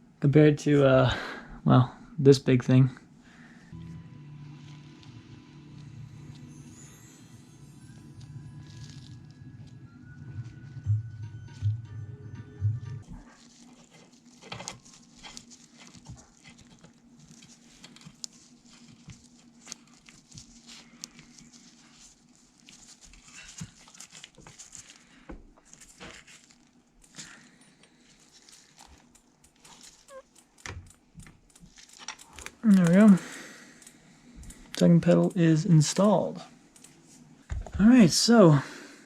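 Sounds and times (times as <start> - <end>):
low steady hum: 0.0 - 39.0
bicycle pedal clicks and taps: 28.7 - 33.1, 33.7 - 36.0.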